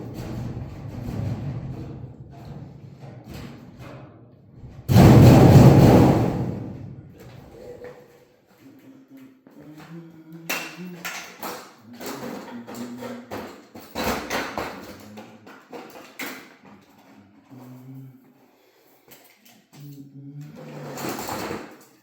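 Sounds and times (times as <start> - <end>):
knocks on sheet-metal ductwork: 4.9 - 7.0.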